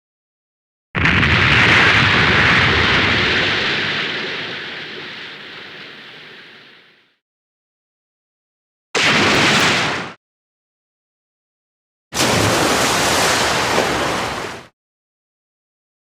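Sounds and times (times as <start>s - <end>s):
rushing burst of water: 1.0s - 7.0s, 12.2s - 14.7s.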